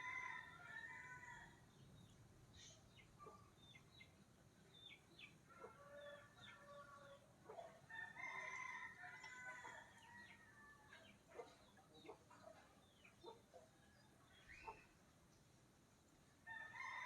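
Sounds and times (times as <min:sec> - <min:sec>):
faint steady hiss: 0:08.9 - 0:17.0.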